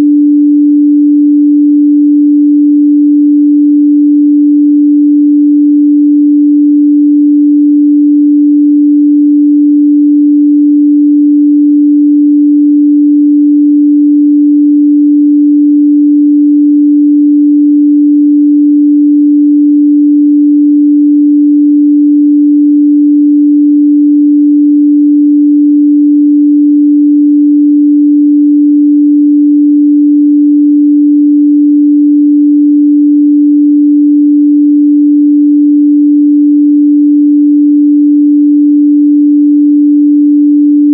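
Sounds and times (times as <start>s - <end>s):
sine-wave test tone: 0.0s - 40.9s.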